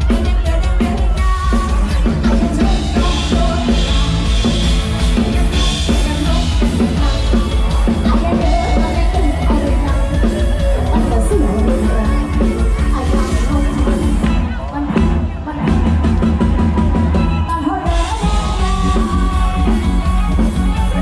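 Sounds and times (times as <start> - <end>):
live band music: 0.0 - 21.0
person singing: 0.0 - 21.0
pounding drum beat: 0.0 - 21.0.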